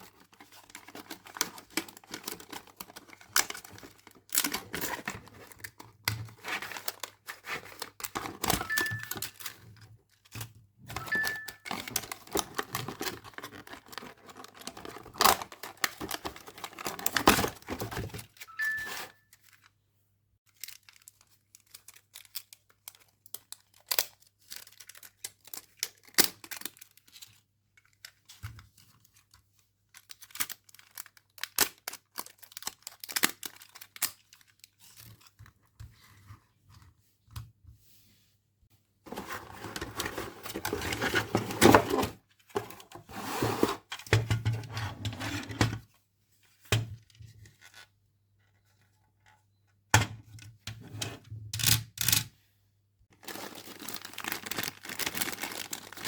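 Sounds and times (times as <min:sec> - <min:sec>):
packaging tearing and crinkling: 0:29.9 - 0:35.3, 0:53.2 - 0:56.0.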